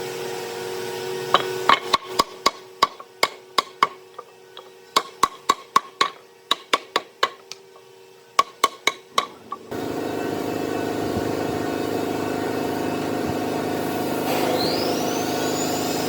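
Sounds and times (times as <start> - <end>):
sharp knocks on wood: 1.4 - 4.0, 4.6 - 7.6, 8.4 - 9.4.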